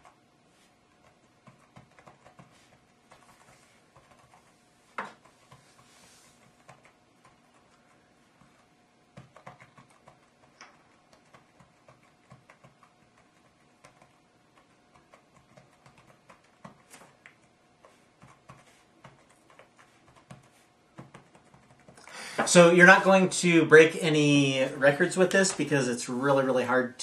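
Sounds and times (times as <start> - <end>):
typing on rubber keyboard: 0.9 - 4.5, 6.4 - 22.0.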